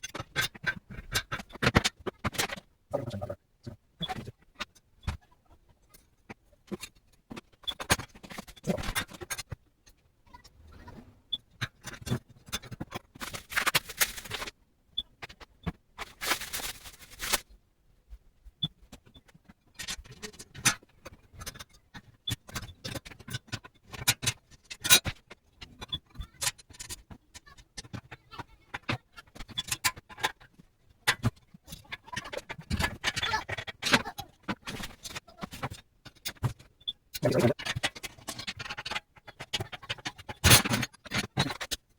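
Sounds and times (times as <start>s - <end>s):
clicks and metal clatter: 11.6s - 14.6s, 18.9s - 41.9s.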